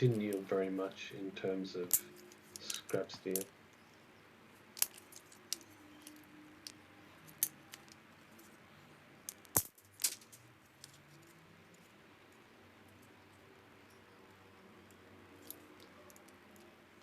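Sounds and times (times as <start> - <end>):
metal parts and tools clinking: 1.8 - 3.5, 4.7 - 12.0, 12.9 - 17.0.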